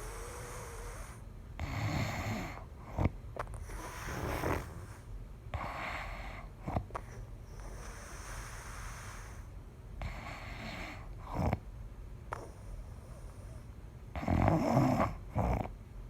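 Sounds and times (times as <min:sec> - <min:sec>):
person snoring: 0:03.7 - 0:05.0.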